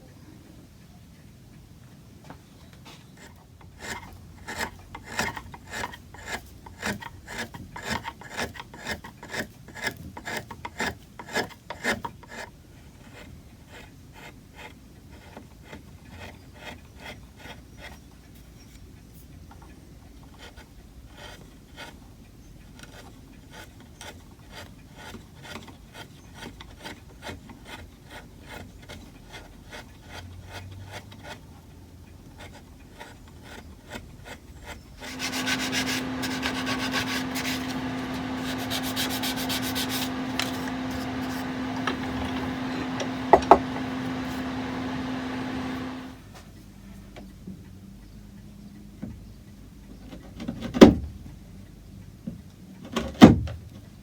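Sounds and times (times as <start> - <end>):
hand sanding wood strokes: 34.6 - 46.2.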